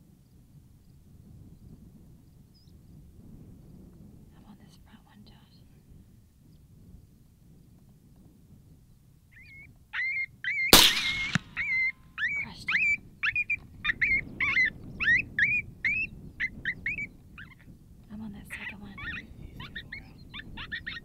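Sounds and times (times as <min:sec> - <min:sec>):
high yelping calls: 0:09.4 - 0:17.7, 0:18.4 - 0:21.0
sharp crack: 0:10.7 - 0:11.7.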